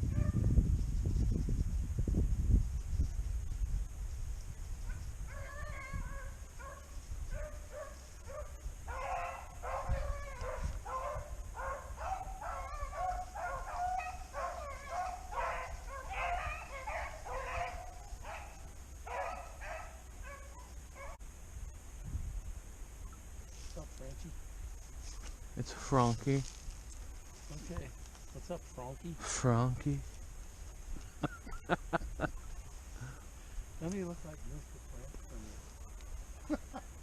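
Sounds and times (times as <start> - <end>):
dogs yelping and baying: 4.9 - 21.2.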